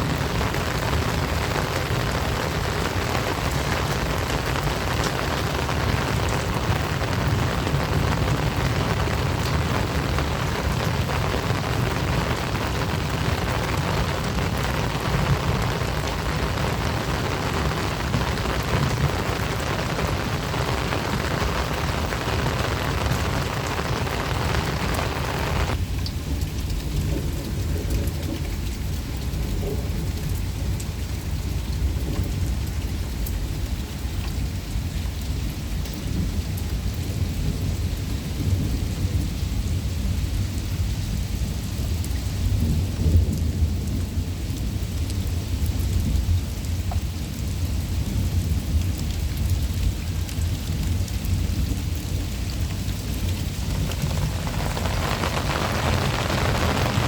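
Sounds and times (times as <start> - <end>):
heavy rain hissing: 0.0 - 25.8, 49.8 - 57.0
constant low rumble: 48.0 - 57.0.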